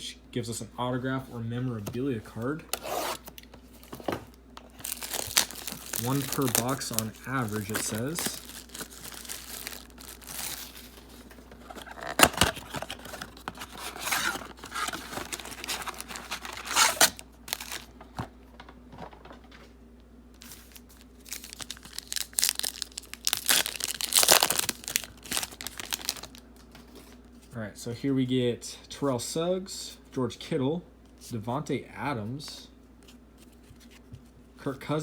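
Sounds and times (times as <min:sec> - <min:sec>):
packaging tearing: 0:02.7 - 0:03.3, 0:04.7 - 0:17.9, 0:20.4 - 0:26.4
wrappers crinkling: 0:04.7 - 0:17.9, 0:20.4 - 0:27.0.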